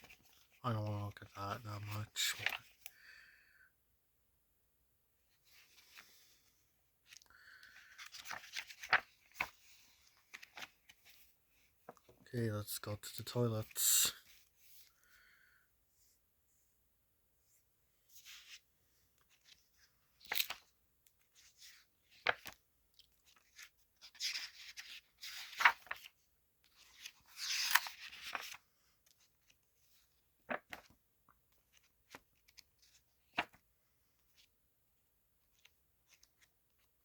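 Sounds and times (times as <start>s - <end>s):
paper rustling: 0.0s - 0.6s, 5.3s - 12.2s, 19.2s - 34.5s.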